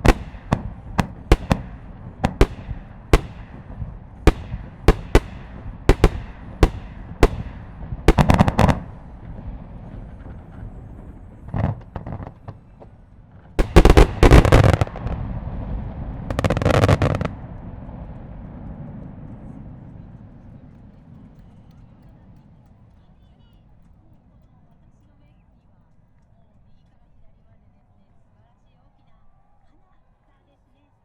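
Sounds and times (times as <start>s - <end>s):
crackling firework volleys: 0.0s - 24.7s
fireworks bursting: 0.0s - 25.0s.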